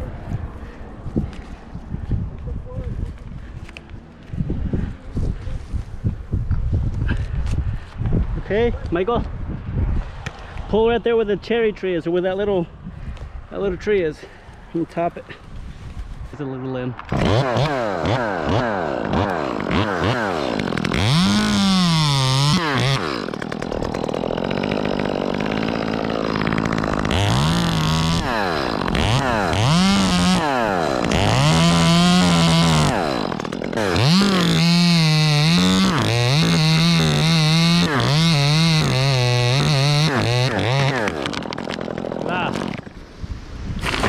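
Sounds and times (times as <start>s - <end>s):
chainsaw revving and cutting: 17.1s - 43.0s.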